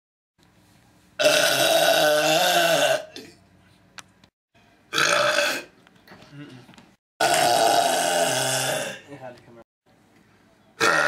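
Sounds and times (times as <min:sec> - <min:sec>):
man burping: 0:01.2 - 0:03.4, 0:04.9 - 0:05.7, 0:07.2 - 0:09.1, 0:10.8 - 0:11.0.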